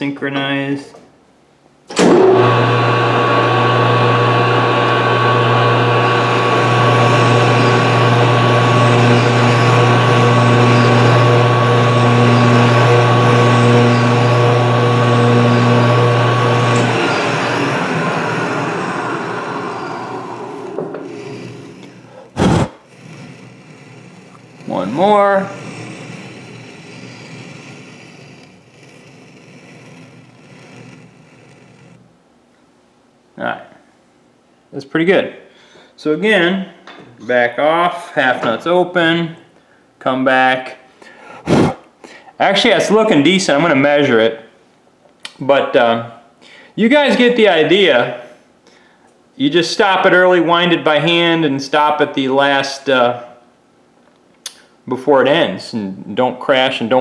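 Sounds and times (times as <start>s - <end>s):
lathe humming with gear whine: 2.0s - 22.1s, 23.0s - 31.9s.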